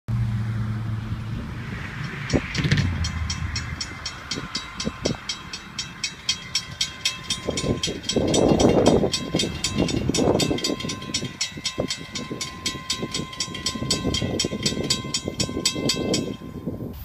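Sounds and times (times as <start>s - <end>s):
diesel engine drone: 0.1s - 11.3s
train wheels clicking over rail joints: 2.0s - 16.5s.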